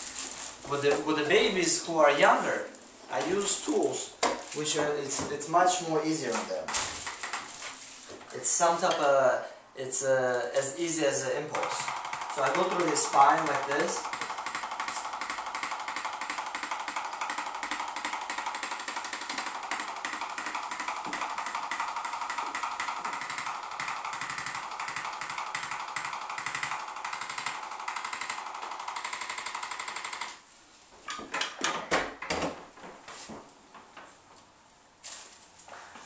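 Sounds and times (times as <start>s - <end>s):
adjusting instrument tapping rapidly: 6.7s - 7.6s, 11.5s - 30.4s.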